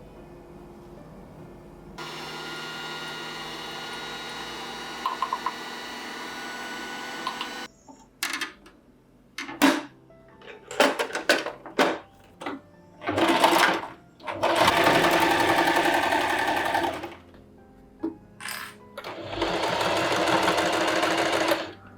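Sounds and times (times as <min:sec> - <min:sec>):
electric appliance humming: 0:02.0 - 0:07.7, 0:13.0 - 0:17.3, 0:19.0 - 0:21.9.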